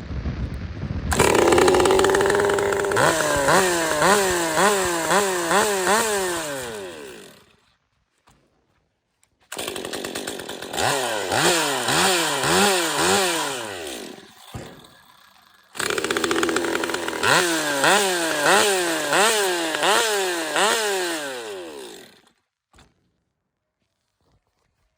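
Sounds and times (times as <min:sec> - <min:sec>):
chainsaw revving and idling: 0:01.1 - 0:07.6, 0:09.5 - 0:22.4.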